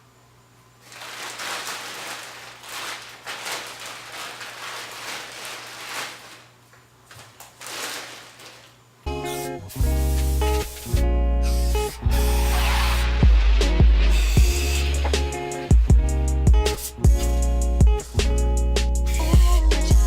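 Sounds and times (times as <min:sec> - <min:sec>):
background music: 0:09.1 - 0:20.0.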